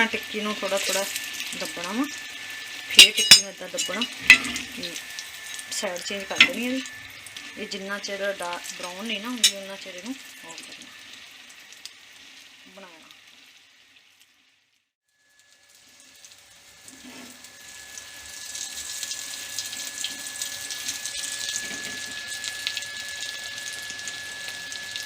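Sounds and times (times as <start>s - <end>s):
food sizzling on hot pan: 0.0s - 25.0s
thin high tone: 2.9s - 10.6s.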